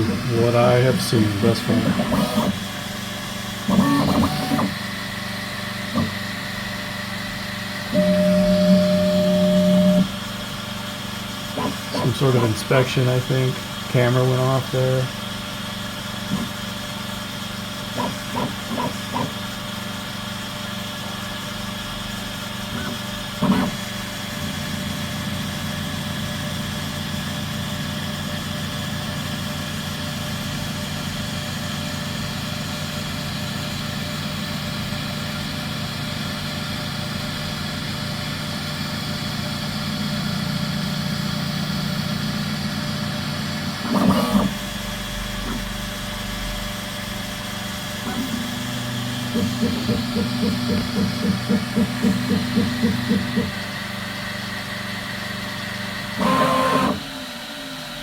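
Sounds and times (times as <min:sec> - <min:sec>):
rhythmic motor buzz: 0:00.0 - 0:10.1, 0:36.7 - 0:54.1, 0:56.0 - 0:57.1
fans whirring: 0:00.0 - 0:32.3, 0:33.3 - 0:58.0.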